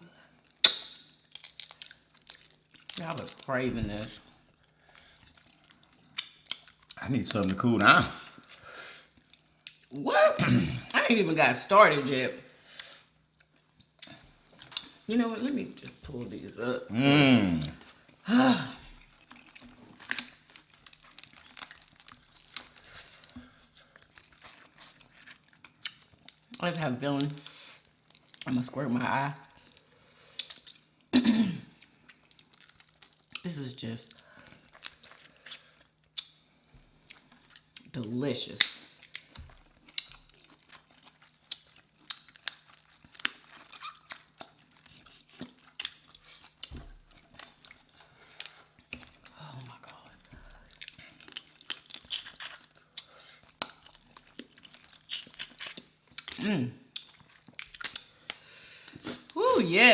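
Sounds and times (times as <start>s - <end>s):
chewing: 0.3s - 7.7s, 18.8s - 26.6s, 34.1s - 36.4s, 38.6s - 59.4s
shellfish shells cracking: 0.6s - 3.5s, 19.4s - 26.3s, 32.4s - 33.3s, 38.6s - 44.6s, 50.7s - 56.4s, 57.0s - 59.0s.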